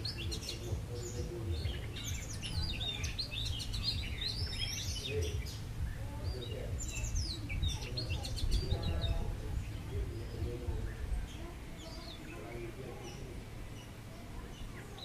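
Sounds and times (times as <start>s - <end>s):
small birds chirping: 0.0s - 15.0s
low rumble: 0.1s - 12.0s.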